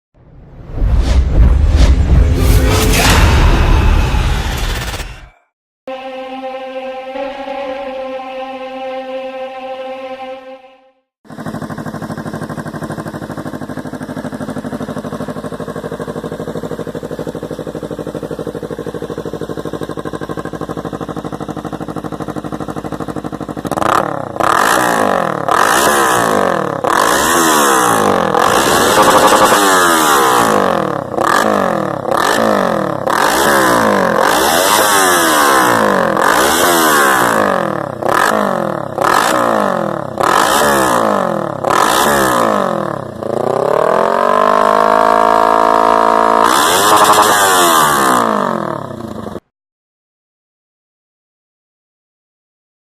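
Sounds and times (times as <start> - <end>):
motorcycle engine idling and revving: 11.2 - 49.5.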